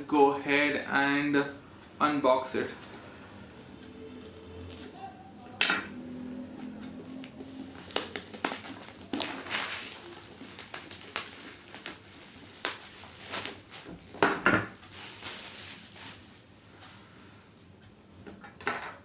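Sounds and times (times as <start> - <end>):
cardboard packaging being handled: 7.0 - 16.3.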